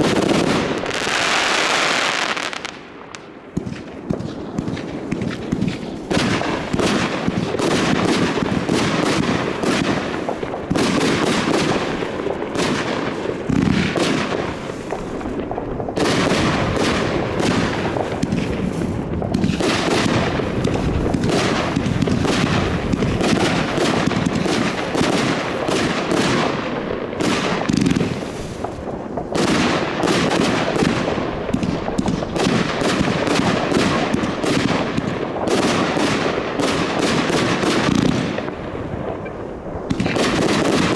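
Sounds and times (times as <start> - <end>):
fireworks bangs and crackle: 0.0 - 40.9.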